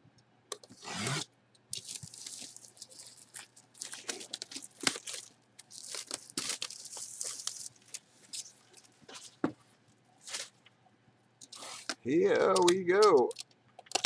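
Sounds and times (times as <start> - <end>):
packaging crinkling and tearing: 1.1 - 9.4, 10.2 - 10.7
sharp clicks and snaps: 12.5 - 14.0.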